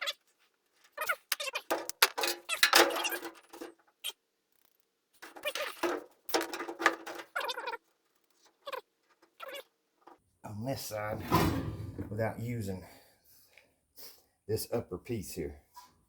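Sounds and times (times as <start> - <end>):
hands working sheet metal: 1.2 - 3.7.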